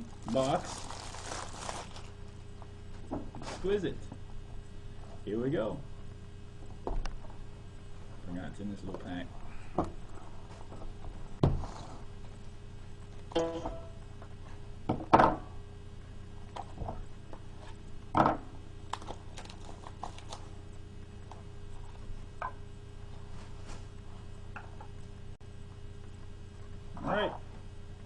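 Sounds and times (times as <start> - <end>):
faint hum: 0.0 - 28.0
packaging clicks and rustles: 0.2 - 2.2, 18.9 - 20.5.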